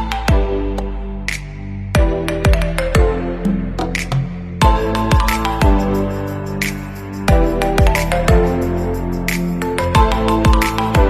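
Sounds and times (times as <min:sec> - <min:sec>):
deep kick drum: 0:02.0 - 0:03.2, 0:04.6 - 0:06.0, 0:07.3 - 0:08.6, 0:10.0 - 0:11.0
held synth chords: 0:04.6 - 0:11.0.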